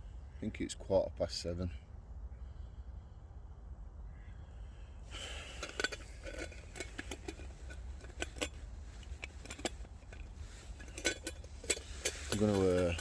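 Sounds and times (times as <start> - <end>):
low steady rumble: 0.0 - 13.0
gear rustling: 5.2 - 13.0
light clicks knocks and clinks: 5.6 - 13.0.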